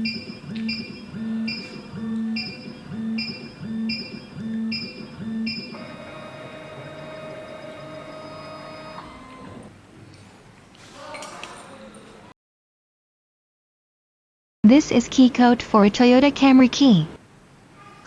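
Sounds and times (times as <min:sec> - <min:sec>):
key cutting machine motor whine: 0:00.0 - 0:09.7.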